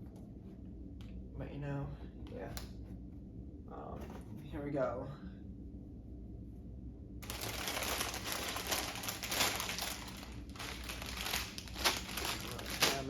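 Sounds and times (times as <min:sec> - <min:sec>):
plastic bag crinkling: 0:07.2 - 0:13.0.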